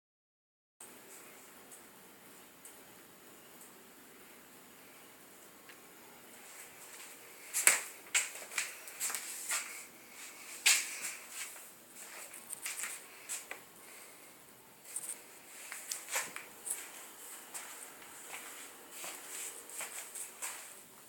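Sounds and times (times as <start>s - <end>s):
rustling: 6.3s - 21.0s.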